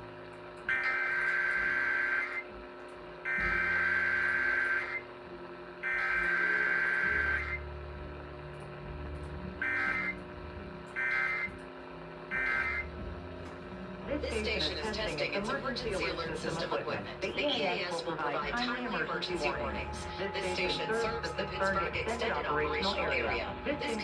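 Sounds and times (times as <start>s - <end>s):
raspy buzzing digital data bursts: 0.7s - 2.5s, 3.2s - 5.1s, 5.8s - 7.6s, 8.6s - 10.2s, 10.9s - 11.7s, 12.3s - 12.9s.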